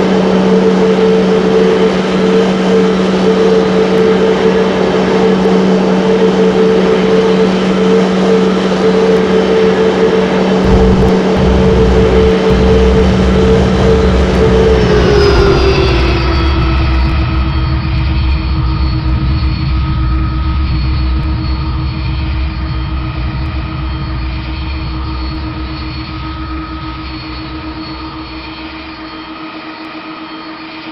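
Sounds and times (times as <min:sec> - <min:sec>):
jet engines spooling down: 0:10.6 - 0:20.1
low rumble: 0:10.6 - 0:21.3.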